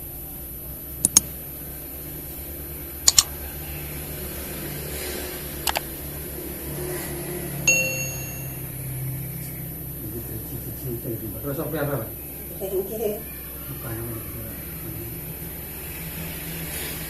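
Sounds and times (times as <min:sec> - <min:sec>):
sharp clicks in pairs: 0:01.0 - 0:01.2, 0:03.1 - 0:03.3
brief ringing tone: 0:07.7 - 0:08.7.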